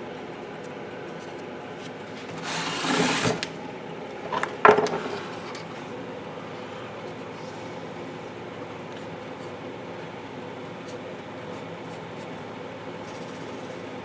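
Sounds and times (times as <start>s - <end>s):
steady background hum: 0.0s - 14.0s
scraping on wooden case: 2.2s - 3.6s.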